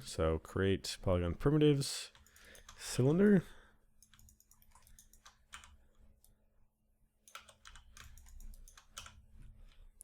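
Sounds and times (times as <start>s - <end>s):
keyboard and mouse clicking: 2.1s - 2.8s, 4.0s - 6.4s, 7.2s - 9.8s.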